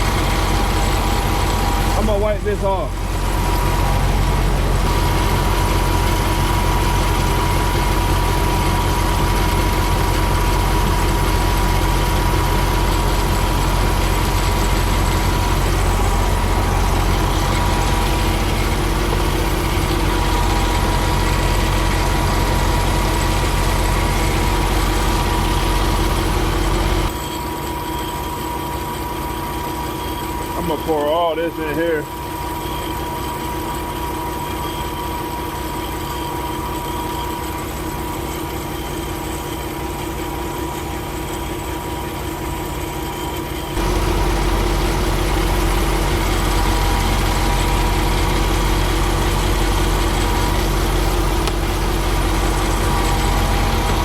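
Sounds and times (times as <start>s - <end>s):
diesel engine idling: 0.0s - 27.2s, 43.6s - 54.0s.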